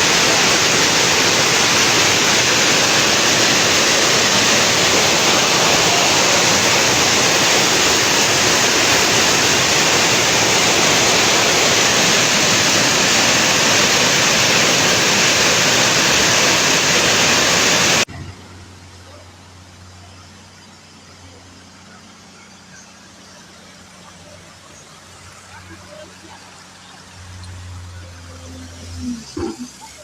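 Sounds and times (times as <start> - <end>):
rushing floodwater: 0.0 - 18.1.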